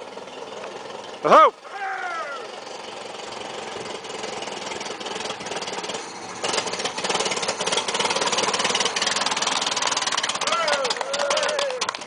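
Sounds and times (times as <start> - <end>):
petrol engine running: 0.0 - 12.0.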